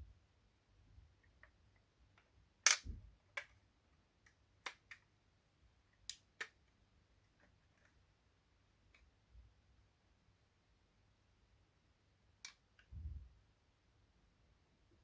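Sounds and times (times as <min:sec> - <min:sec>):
clicks and taps handling toy car: 0:04.2 - 0:05.0.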